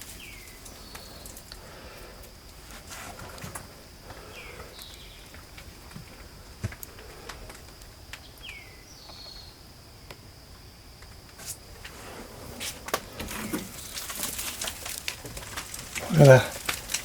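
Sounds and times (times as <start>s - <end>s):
high-pitched insect drone: 0.0s - 15.4s
footsteps crunching debris: 11.3s - 17.0s.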